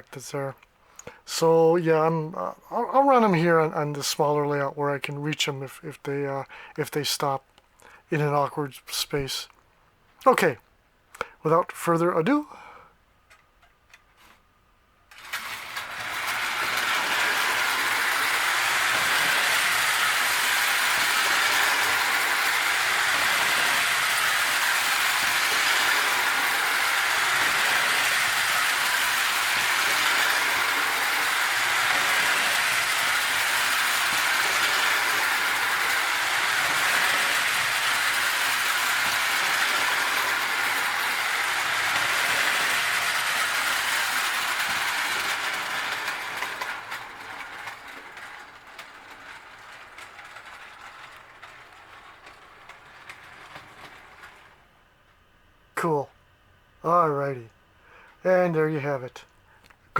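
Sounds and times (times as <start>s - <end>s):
clockwork motor whirring: 15.1s - 54.6s
toy train wheels clattering: 15.1s - 54.8s.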